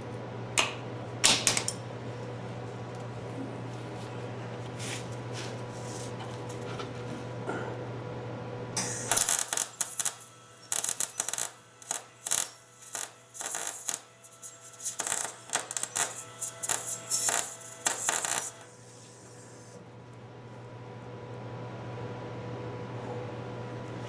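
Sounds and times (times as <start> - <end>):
electric welder crackling: 8.8 - 18.7.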